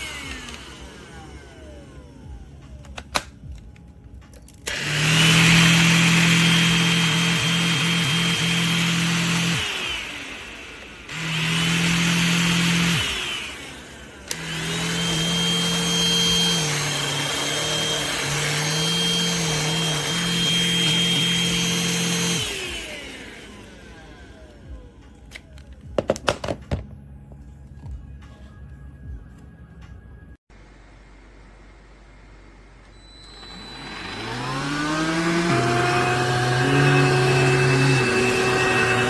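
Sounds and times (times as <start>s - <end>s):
handheld vacuum motor whining: 0.0s - 3.8s, 4.6s - 24.9s, 32.9s - 39.0s.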